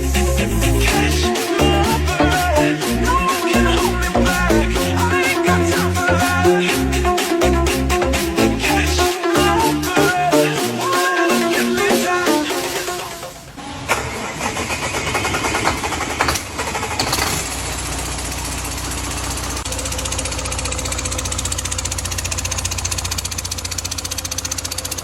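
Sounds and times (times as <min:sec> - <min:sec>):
car engine starting and idling: 0:12.4 - 0:25.0.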